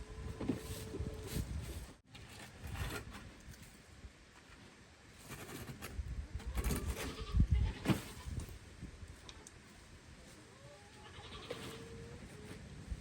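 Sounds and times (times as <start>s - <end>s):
scraping and rustling: 0.3s - 3.8s, 4.4s - 8.6s.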